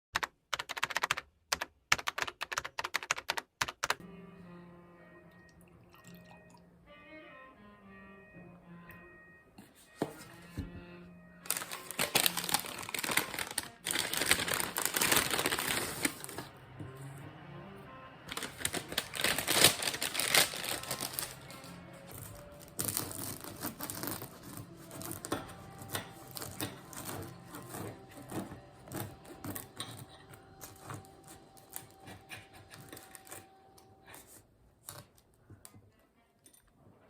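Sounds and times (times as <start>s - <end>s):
held notes: 4.0s - 13.9s
soft background music: 4.0s - 37.0s.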